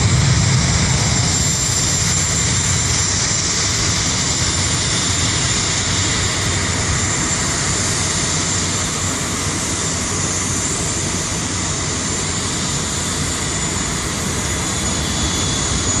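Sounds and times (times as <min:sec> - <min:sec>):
jet engines at takeoff: 0:00.0 - 0:16.0.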